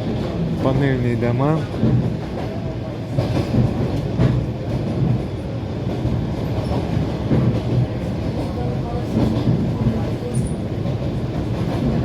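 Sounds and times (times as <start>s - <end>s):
train wheels clattering over rails: 0.0s - 12.0s.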